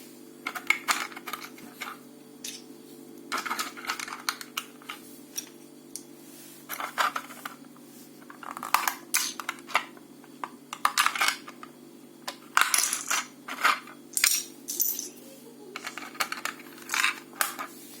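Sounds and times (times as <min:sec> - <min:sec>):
steady low hum: 0:00.0 - 0:18.0
plastic pieces clicking and clattering: 0:03.3 - 0:04.7, 0:08.4 - 0:09.9, 0:10.7 - 0:11.6, 0:12.3 - 0:15.1, 0:15.8 - 0:17.7.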